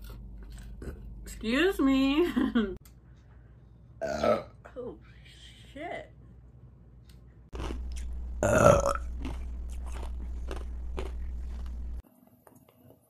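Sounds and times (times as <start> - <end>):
steady low hum: 0.0 - 4.0, 6.2 - 12.0
woman burping: 4.0 - 4.5, 8.4 - 9.0.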